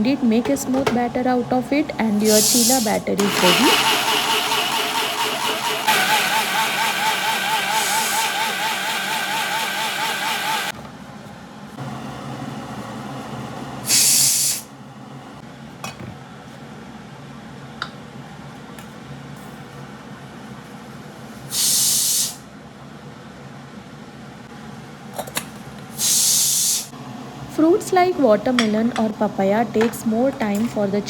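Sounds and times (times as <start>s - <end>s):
mixer grinder motor whine: 3.2s - 10.8s.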